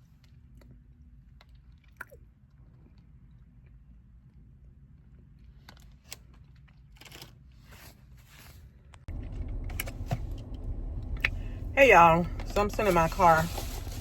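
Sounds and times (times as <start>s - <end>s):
low rumble inside a car: 9.1s - 14.0s.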